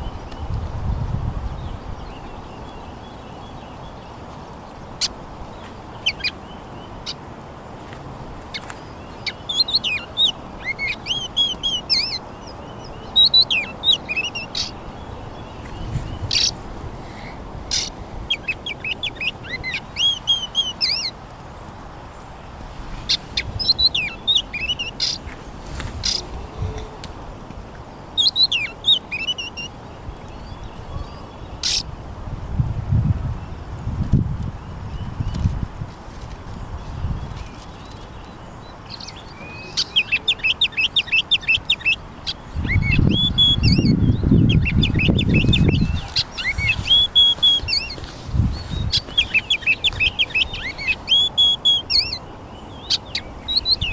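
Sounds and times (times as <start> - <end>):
steady low background noise: 0.0 - 53.9
bird singing high chirps: 8.5 - 16.6, 17.2 - 21.2, 23.1 - 25.2, 28.2 - 31.9, 36.9 - 53.9.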